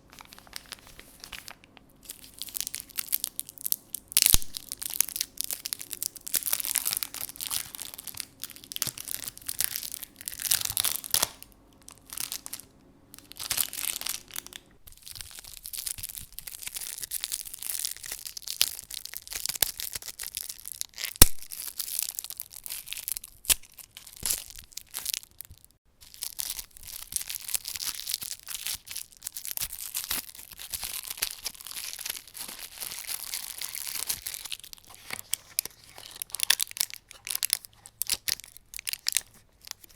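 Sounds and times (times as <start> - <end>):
paper wrapper crinkling: 0.0 - 39.9.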